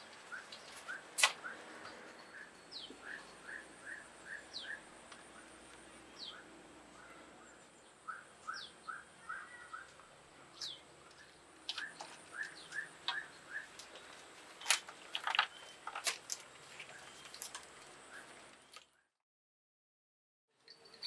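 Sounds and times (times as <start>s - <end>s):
birds chirping: 0.0s - 19.1s
sharp clicks: 1.2s - 2.0s.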